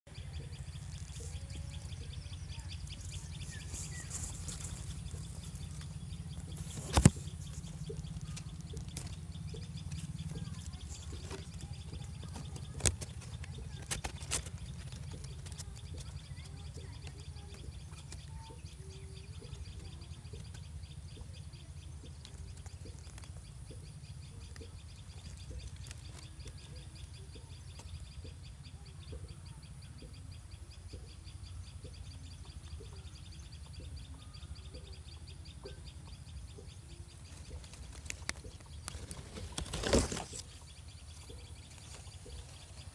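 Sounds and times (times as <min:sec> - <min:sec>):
faint bird calls: 0:00.1 - 0:42.9
steady low rumble: 0:00.1 - 0:42.9
rapid high ticking: 0:00.2 - 0:28.4
sharp clicks: 0:02.9 - 0:18.4, 0:37.3 - 0:40.6.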